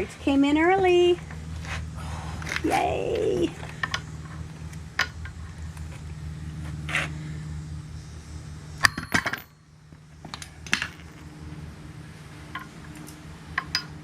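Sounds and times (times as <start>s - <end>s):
low steady hum: 0.0s - 14.0s
metal tools clinking: 8.8s - 9.6s, 13.6s - 14.0s
sharp metallic knocks: 8.8s - 9.6s, 13.5s - 14.0s.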